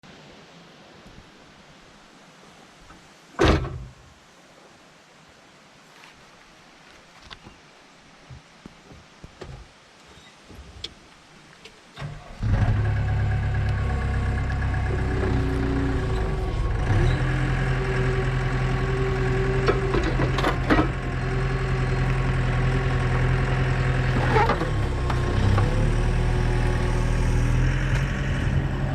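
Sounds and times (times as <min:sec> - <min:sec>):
skid steer engine running: 0:12.0 - 0:28.9.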